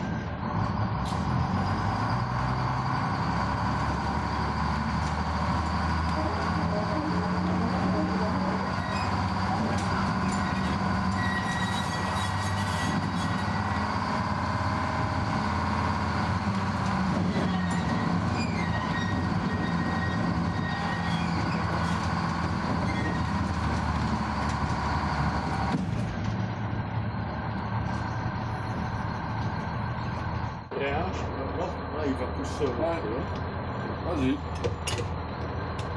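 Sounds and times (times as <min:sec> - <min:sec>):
tram motor hum: 0:00.0 - 0:35.9
wheel and rail noise: 0:00.0 - 0:35.9
thin wheel squeal: 0:07.2 - 0:13.9, 0:17.3 - 0:22.1, 0:22.7 - 0:23.4.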